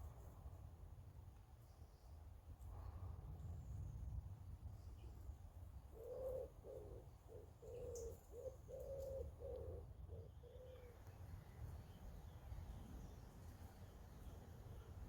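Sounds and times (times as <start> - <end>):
pigeon cooing: 6.0 - 10.9.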